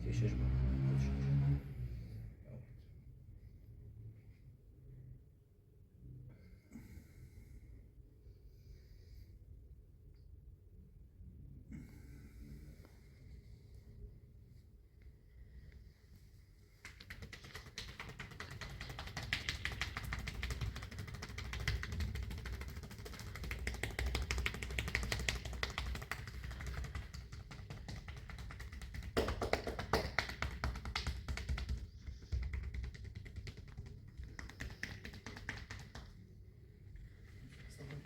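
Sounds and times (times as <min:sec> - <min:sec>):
percussive massage tapping: 0:16.8 - 0:36.2.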